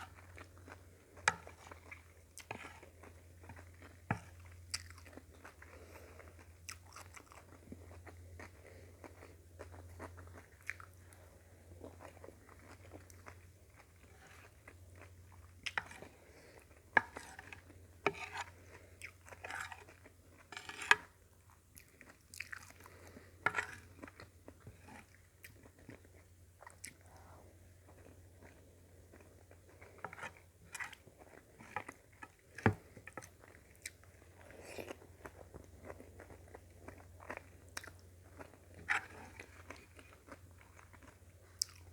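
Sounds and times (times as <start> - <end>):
person chewing food: 0.0 - 41.9.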